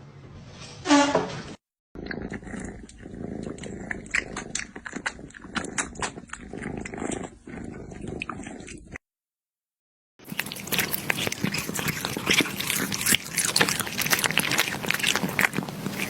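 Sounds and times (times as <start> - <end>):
pet animal low rumbling: 2.0 - 9.0.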